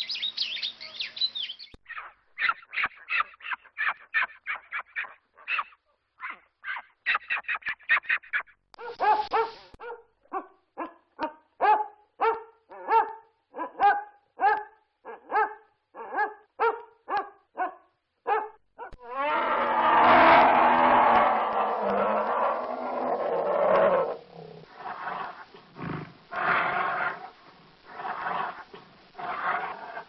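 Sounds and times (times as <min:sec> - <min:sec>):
dog barking deeply: 0:08.8 - 0:19.0
rough animal roar: 0:19.0 - 0:30.0.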